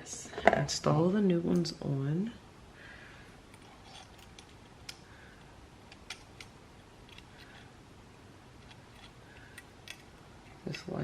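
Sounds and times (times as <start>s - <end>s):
small metal parts clicking: 3.5s - 7.7s, 8.6s - 10.9s.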